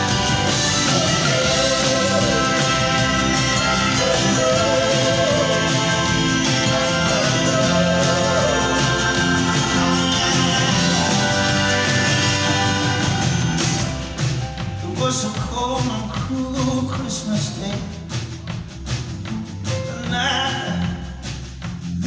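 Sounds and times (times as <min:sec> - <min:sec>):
wavering lead melody: 0:00.0 - 0:14.1
live band playing: 0:00.0 - 0:16.8.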